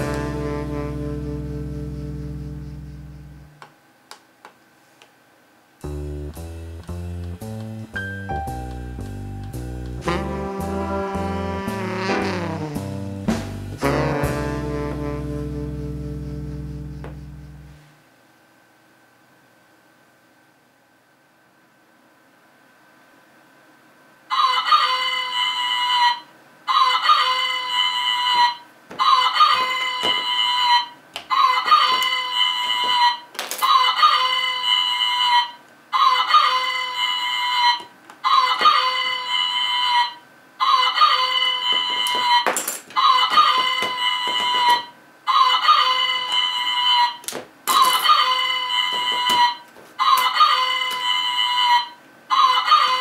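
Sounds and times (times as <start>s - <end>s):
recorded rooster crow alarm: 24.3s - 42.4s, 43.0s - 47.2s, 47.8s - 53.0s.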